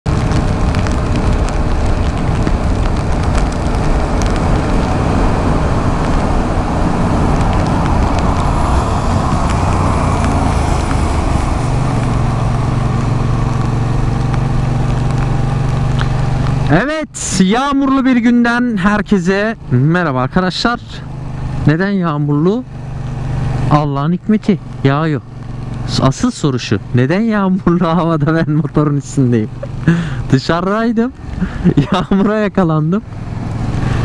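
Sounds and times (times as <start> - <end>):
motorcycle engine running: 0.0 - 17.0, 33.0 - 34.0
low engine hum: 0.0 - 34.0
wind and tyre noise: 0.0 - 34.0.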